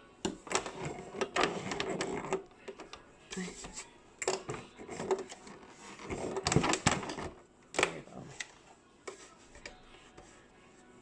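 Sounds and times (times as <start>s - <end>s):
sewing machine stitching: 0.5s - 2.4s.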